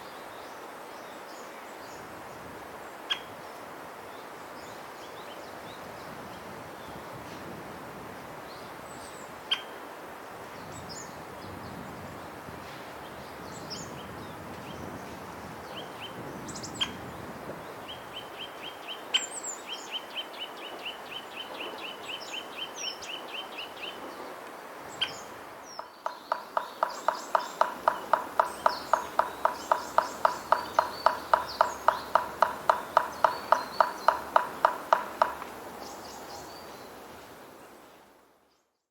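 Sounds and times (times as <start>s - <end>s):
sharp bird calls: 25.0s - 36.5s
series of lower bird notes: 25.7s - 37.1s.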